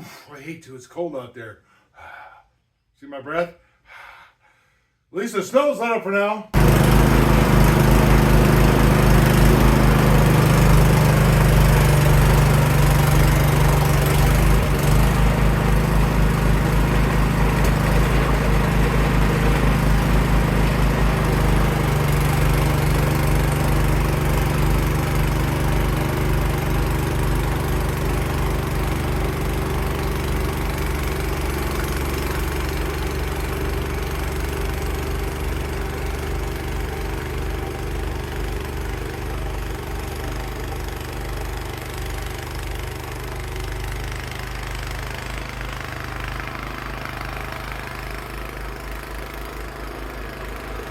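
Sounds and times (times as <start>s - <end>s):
snowblower engine running: 6.6s - 50.9s.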